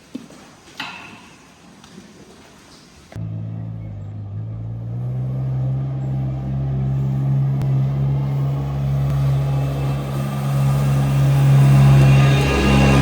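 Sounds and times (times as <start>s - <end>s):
vehicle engine running: 3.2s - 13.0s.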